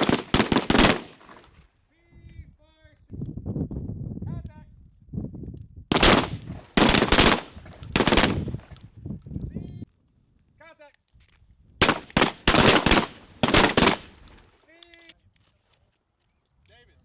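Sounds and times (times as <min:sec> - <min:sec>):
rifle shots with echo: 0:00.0 - 0:01.5, 0:05.9 - 0:08.7, 0:11.8 - 0:14.4.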